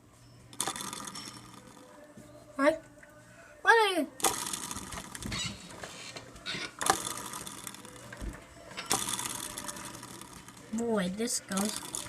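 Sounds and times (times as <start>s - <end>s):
ceiling fan rattling and clicking: 0.5s - 1.8s, 4.2s - 12.0s.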